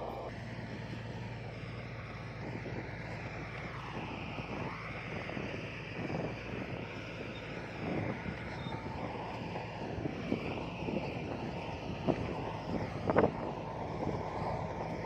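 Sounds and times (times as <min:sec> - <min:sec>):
heavy diesel engine running: 0:00.0 - 0:15.0.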